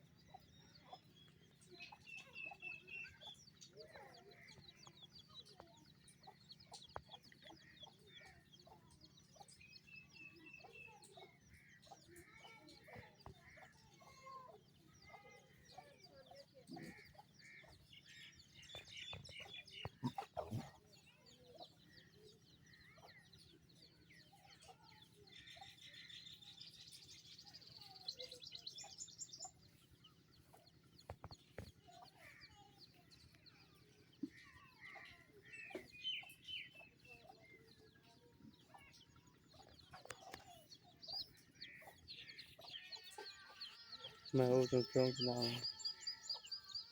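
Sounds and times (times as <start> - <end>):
bird clucking calls: 15.9 - 21.6.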